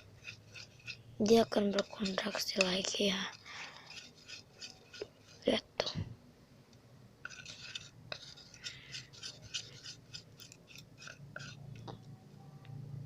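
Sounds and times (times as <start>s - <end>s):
slime being stirred squelching: 0.0s - 5.6s, 7.2s - 12.0s.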